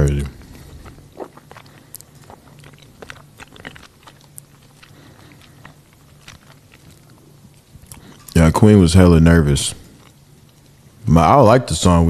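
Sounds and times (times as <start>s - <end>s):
faint small clicks and crunches: 0.0s - 8.5s, 9.8s - 10.9s
low steady hum: 0.0s - 12.0s.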